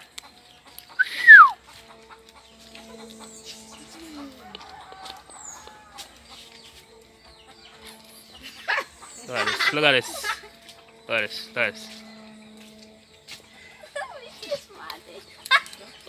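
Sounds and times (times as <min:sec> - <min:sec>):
faint farmyard sounds: 0:00.0 - 0:16.0
chicken squawking: 0:01.0 - 0:01.6.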